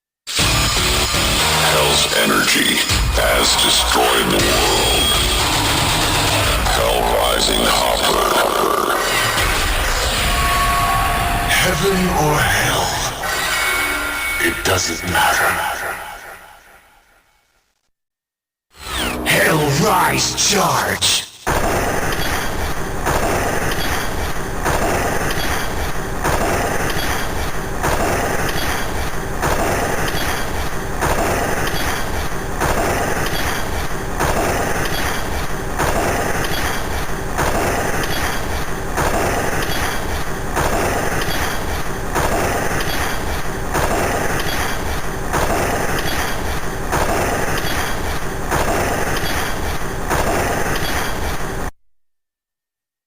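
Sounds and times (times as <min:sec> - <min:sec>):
harsh electronic sound effect loop: 0:00.3 - 0:17.0, 0:18.8 - 0:24.0.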